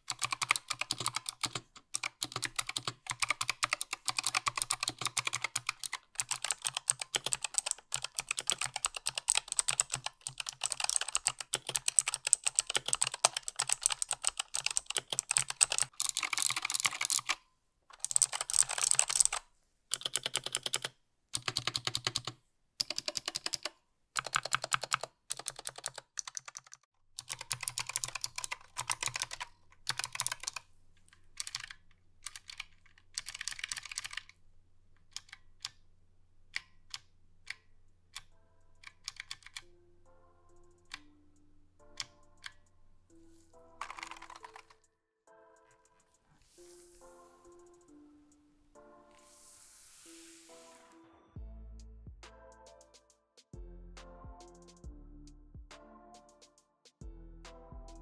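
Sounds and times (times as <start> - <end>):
keyboard typing: 0.0 - 34.4, 36.5 - 39.7, 40.5 - 41.2, 41.8 - 42.7, 43.7 - 44.9.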